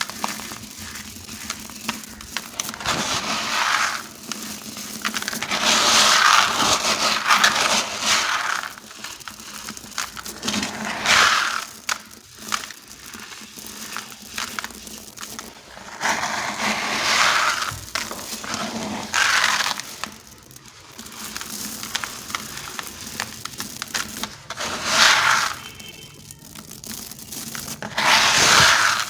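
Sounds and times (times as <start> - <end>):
small crackles and ticks: 0.0 - 3.0, 8.6 - 10.4, 11.3 - 15.6, 19.6 - 24.6, 25.5 - 27.9
blocks crumbling and crunching: 0.0 - 29.0.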